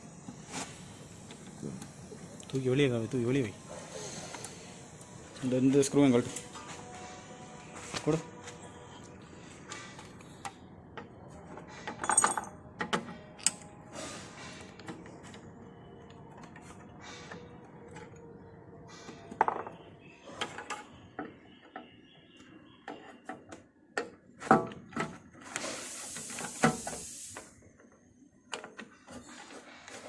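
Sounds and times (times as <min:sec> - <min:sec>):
hiss: 0:00.2 - 0:05.5, 0:25.5 - 0:27.6
metal tools and panels clinking: 0:11.8 - 0:13.7.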